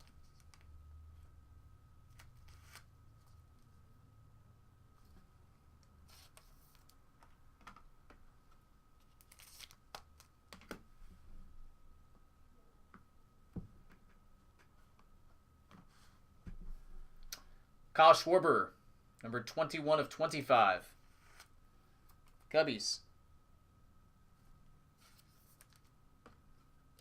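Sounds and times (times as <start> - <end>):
trading cards rustling and clicking: 2.1 - 3.4, 9.0 - 10.8, 25.0 - 25.9.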